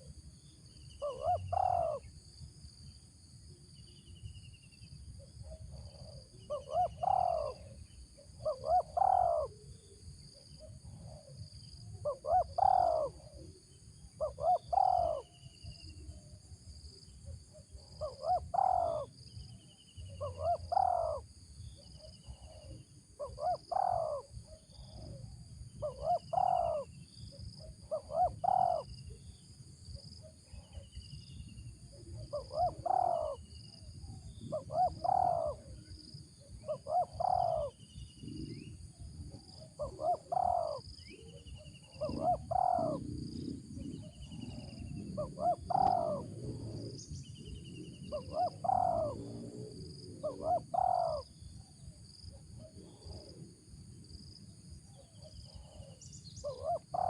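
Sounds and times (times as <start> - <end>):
dove cooing: 1.0 - 2.1, 5.4 - 9.9, 10.6 - 15.5, 17.5 - 19.2, 20.0 - 21.3, 22.0 - 26.9, 27.6 - 29.2, 32.2 - 49.5, 50.1 - 51.3, 55.2 - 57.0.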